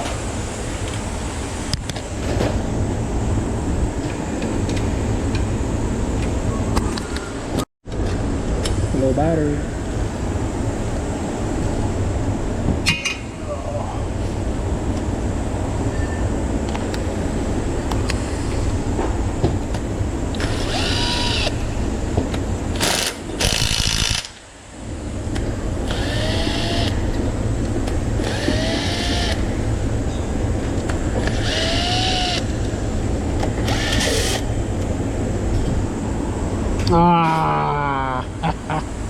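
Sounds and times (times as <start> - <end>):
steady shop hum: 0.0 - 39.0
cordless impact wrench: 20.4 - 21.6, 22.8 - 24.4, 25.9 - 27.0, 28.2 - 29.5, 31.2 - 32.5, 33.6 - 34.5.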